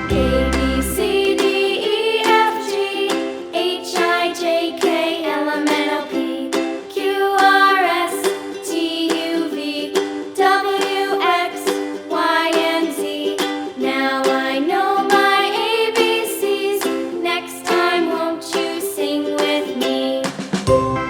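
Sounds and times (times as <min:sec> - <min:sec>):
upbeat ukulele music: 0:00.0 - 0:21.0.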